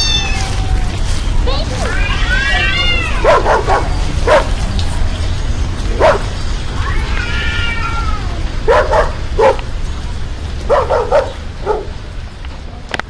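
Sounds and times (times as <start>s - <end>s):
cat meowing: 0.0s - 8.6s
dog barking in sharp yips: 2.8s - 5.0s, 6.0s - 6.4s, 8.7s - 9.7s, 10.7s - 11.9s.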